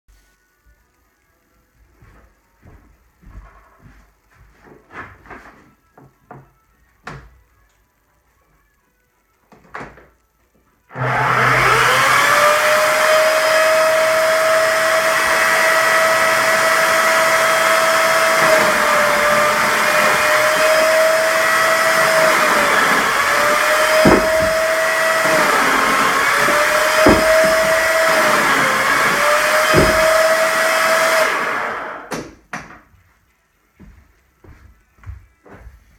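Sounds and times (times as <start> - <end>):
electric chainsaw whining: 10.9 - 32.1
sharp knocks: 21.9 - 30.5.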